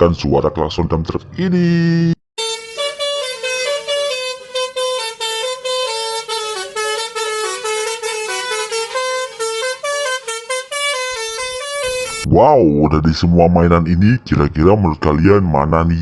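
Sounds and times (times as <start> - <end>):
musical truck horn tune: 2.4 - 12.3.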